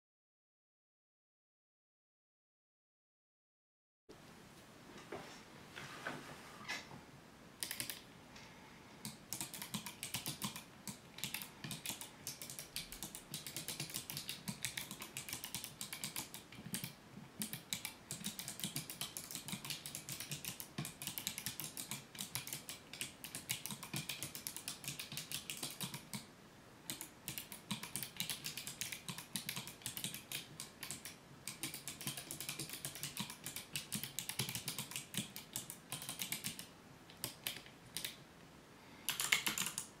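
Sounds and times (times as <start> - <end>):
typing on a keyboard: 7.6 - 8.0, 9.0 - 26.3, 26.9 - 38.2, 39.1 - 40.0.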